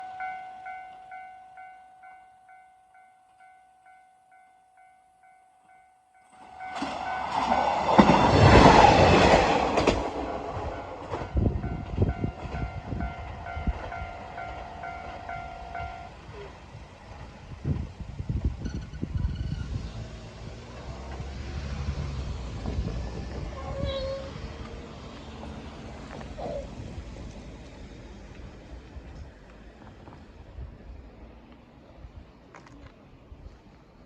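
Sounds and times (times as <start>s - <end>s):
level crossing alarm bell: 0.0s - 7.6s, 11.3s - 16.2s
train rushing past: 6.3s - 32.2s
wheels clacking over rail joints: 6.5s - 30.2s.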